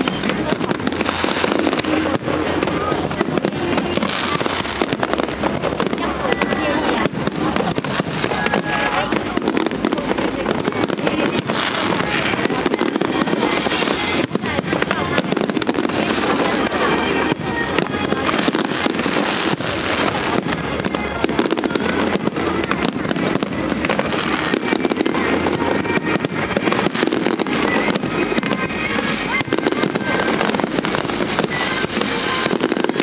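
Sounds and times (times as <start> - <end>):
fireworks bangs and crackling: 0.0 - 33.0.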